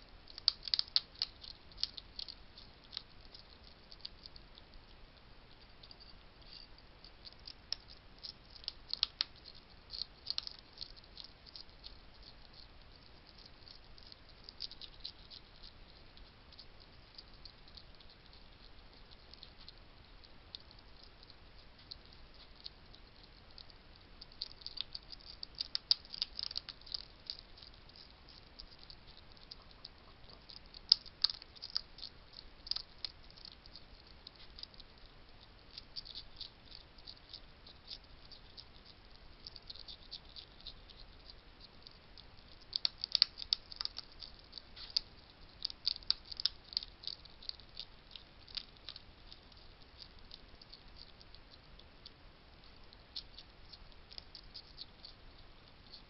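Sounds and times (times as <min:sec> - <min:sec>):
hedgehogs crunching dry food: 0:00.1 - 0:56.0.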